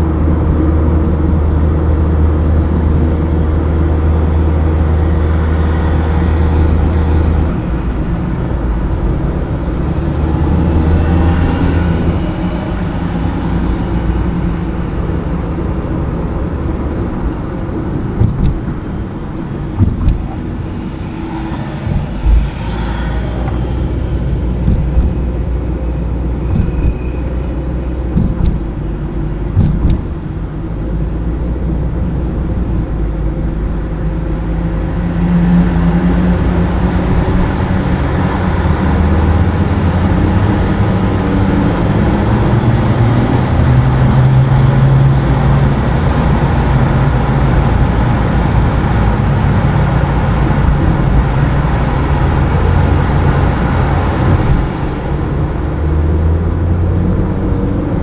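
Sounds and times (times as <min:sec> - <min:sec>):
car engine humming: 0:00.0 - 0:58.0
tyre and road noise: 0:00.0 - 0:58.0
knocks from road bumps: 0:18.2 - 0:18.9, 0:19.7 - 0:20.5, 0:24.6 - 0:25.4, 0:26.5 - 0:27.1, 0:28.1 - 0:28.8, 0:29.5 - 0:30.3.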